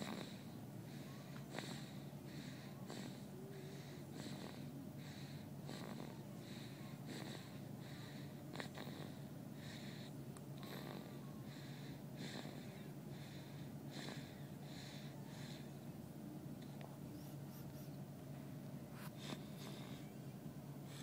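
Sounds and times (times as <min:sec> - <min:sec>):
girl snoring loudly: 0:00.0 - 0:00.5, 0:05.6 - 0:09.2, 0:10.6 - 0:11.2.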